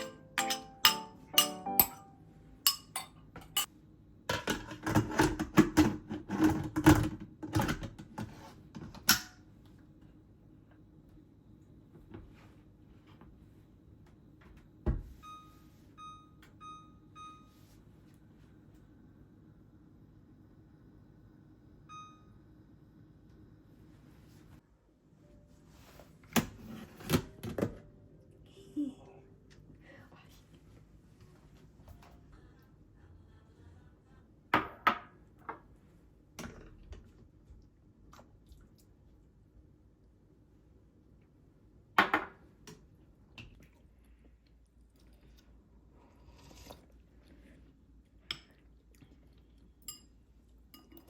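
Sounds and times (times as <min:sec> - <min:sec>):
appliance beeping: 0:15.1 - 0:17.6, 0:21.8 - 0:22.6.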